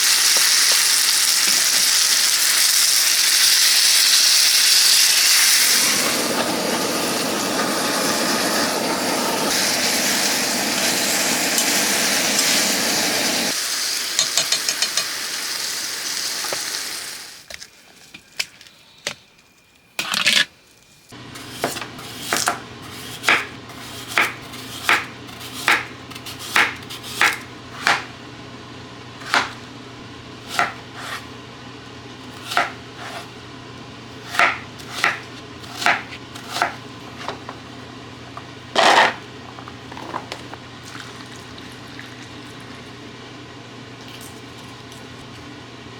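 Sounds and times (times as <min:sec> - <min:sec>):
food sizzling: 0:00.0 - 0:17.5
knife chopping on cutting board: 0:21.4 - 0:28.1, 0:29.2 - 0:29.6, 0:30.5 - 0:31.2, 0:32.4 - 0:33.3, 0:34.2 - 0:37.4.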